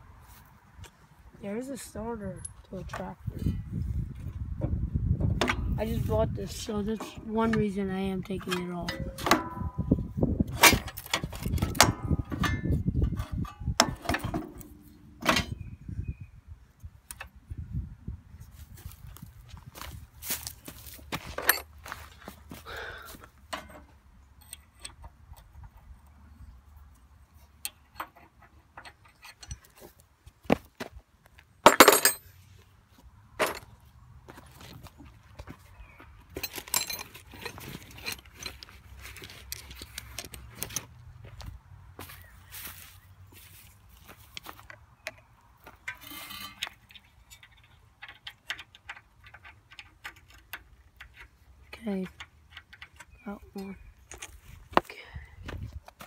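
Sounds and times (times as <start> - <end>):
hand tools clinking on metal: 6.9 - 9.8, 21.3 - 21.8, 31.6 - 32.3, 36.3 - 40.8, 45.7 - 51.3
metallic clicks and taps: 45.9 - 51.3.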